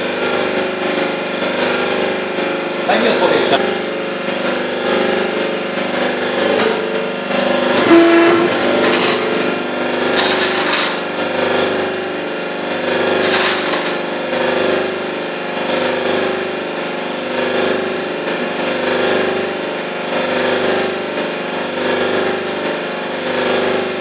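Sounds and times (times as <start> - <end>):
gearbox motor humming: 3.5 - 12.2.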